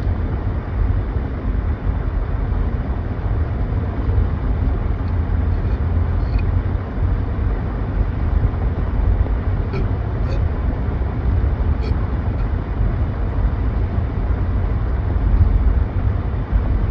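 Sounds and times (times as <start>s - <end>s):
car cabin road and engine noise: 0.0s - 16.9s.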